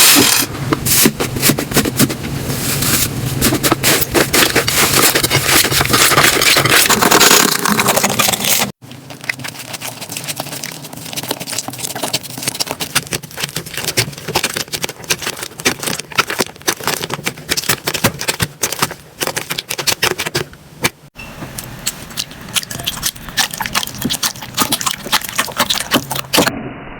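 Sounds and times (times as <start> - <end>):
slime crackling and popping: 4.4 - 20.4.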